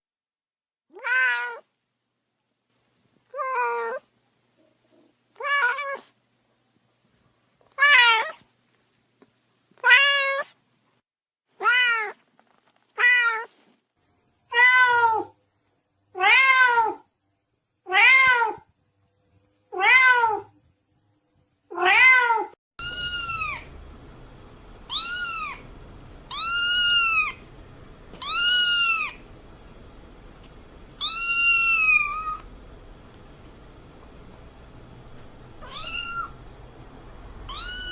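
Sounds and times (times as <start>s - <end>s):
cat meowing: 0.9s - 1.7s, 3.3s - 4.1s, 5.4s - 6.2s, 7.7s - 8.5s, 9.8s - 10.6s, 11.6s - 12.2s, 13.0s - 13.5s, 14.5s - 15.4s, 16.2s - 17.0s, 17.9s - 18.7s, 19.7s - 20.5s, 21.7s - 23.7s, 24.9s - 25.7s, 26.3s - 27.4s, 28.2s - 29.2s, 31.0s - 32.4s, 35.6s - 36.4s, 37.4s - 37.9s.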